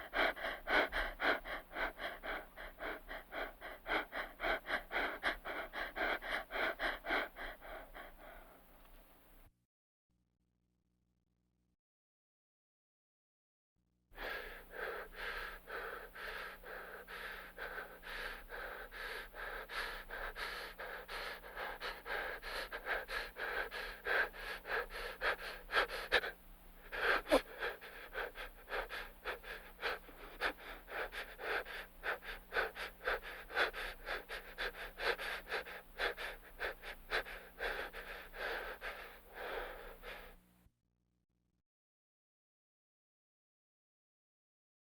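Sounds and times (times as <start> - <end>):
person breathing rapidly: 0.0 - 9.4, 14.2 - 40.5.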